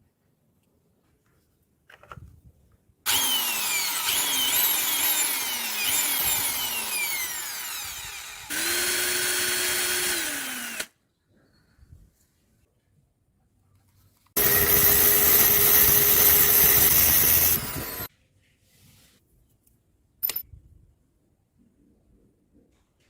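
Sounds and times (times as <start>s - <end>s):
small electric motor whining: 3.1s - 10.9s, 14.4s - 18.1s.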